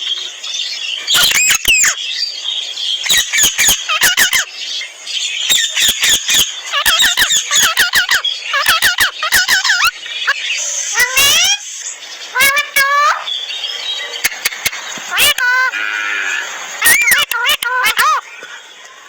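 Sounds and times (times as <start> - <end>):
parrot squawking: 1.0 - 2.0, 3.0 - 4.5, 5.5 - 11.7, 12.3 - 13.3, 14.1 - 18.6.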